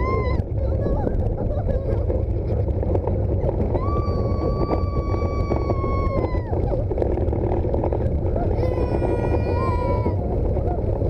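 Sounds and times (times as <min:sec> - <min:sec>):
roller coaster train rumble: 0:00.0 - 0:11.0
wind on microphone: 0:00.0 - 0:11.0
rider screaming: 0:03.7 - 0:06.8, 0:08.2 - 0:10.9.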